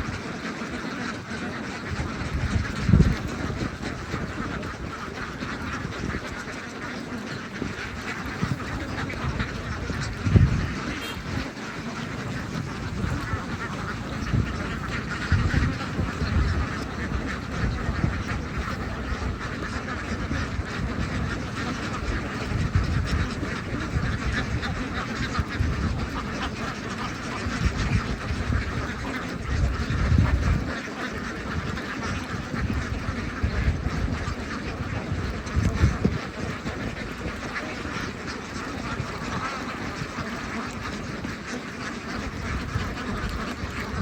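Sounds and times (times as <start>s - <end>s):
ducks quacking: 0.0s - 44.0s
low rumbles: 8.6s - 19.4s.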